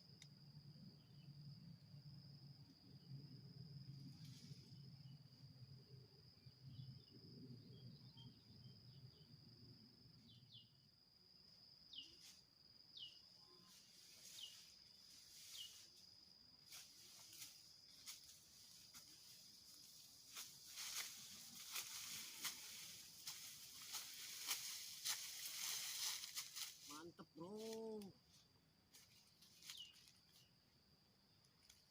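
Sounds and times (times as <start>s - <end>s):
high-pitched insect drone: 10.3s - 30.5s.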